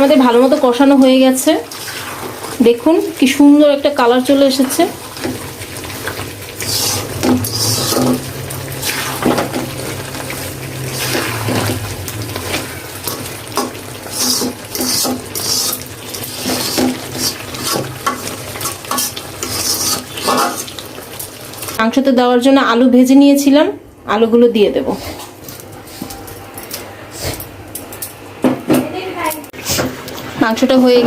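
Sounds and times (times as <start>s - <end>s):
light sizzle: 0.0s - 31.0s
spatula scraping a pan: 1.7s - 2.6s, 4.7s - 10.0s, 10.8s - 20.8s.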